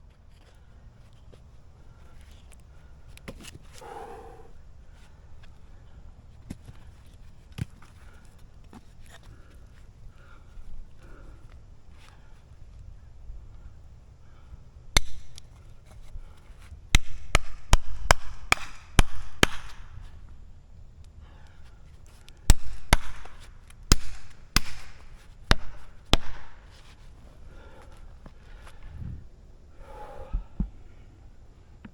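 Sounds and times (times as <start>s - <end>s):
heavy blows striking wood: 17.0s - 19.8s, 22.5s - 26.6s.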